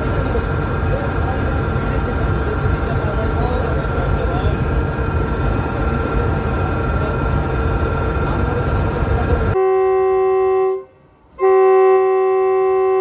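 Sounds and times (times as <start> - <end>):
low rumbling locomotive noise: 0.0 - 13.0
diesel locomotive horn: 9.3 - 13.0.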